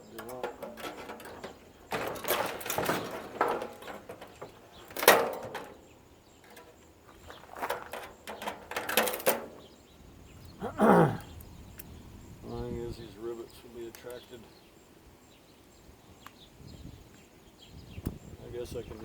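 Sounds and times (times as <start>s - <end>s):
plastic parts clattering and scraping: 0.0s - 9.8s.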